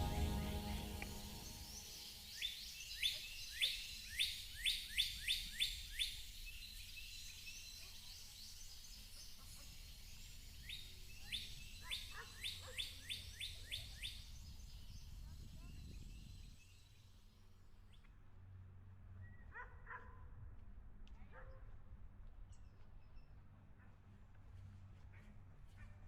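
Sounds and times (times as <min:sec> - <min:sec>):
faint outdoor hiss: 0:00.0 - 0:15.8
bird singing: 0:00.0 - 0:17.2.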